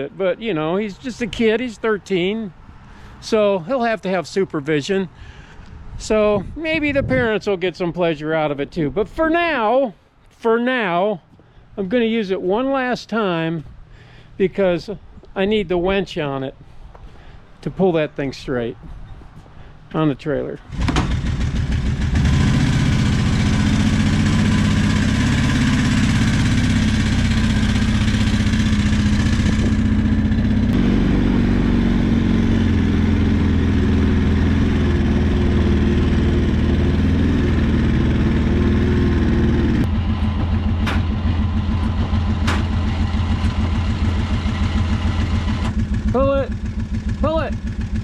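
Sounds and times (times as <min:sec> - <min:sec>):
atv engine running: 0:20.7 - 0:48.0.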